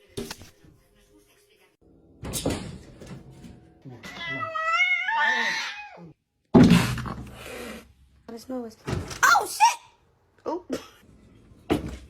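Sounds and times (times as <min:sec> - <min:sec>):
cat meowing: 0:04.0 - 0:06.1.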